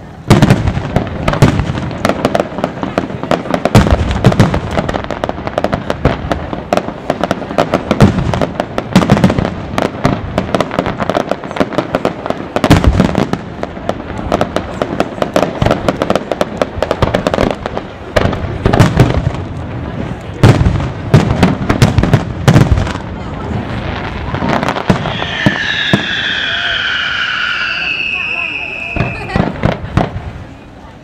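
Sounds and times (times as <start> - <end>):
fireworks crackling and popping: 0.0 - 31.0
heavy fireworks booms: 0.0 - 31.0.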